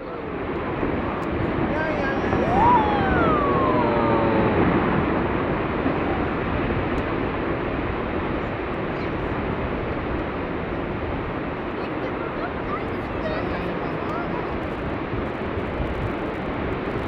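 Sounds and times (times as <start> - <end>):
falling vocal exclamation: 1.7 - 5.0.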